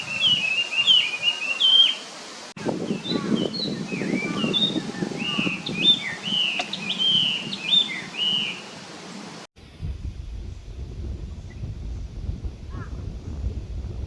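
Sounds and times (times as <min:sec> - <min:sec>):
wind on microphone: 0:00.0 - 0:01.0, 0:02.6 - 0:08.4, 0:09.6 - 0:14.0
songbird singing: 0:00.0 - 0:08.8.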